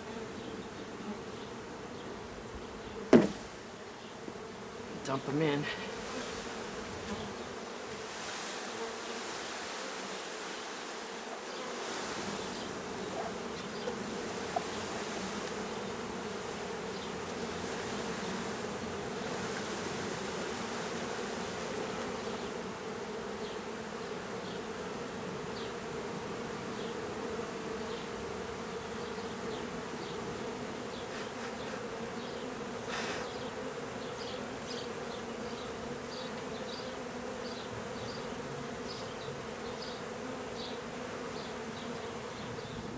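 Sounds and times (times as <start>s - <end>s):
bees buzzing: 0.0s - 42.9s
short knock: 3.1s - 3.4s.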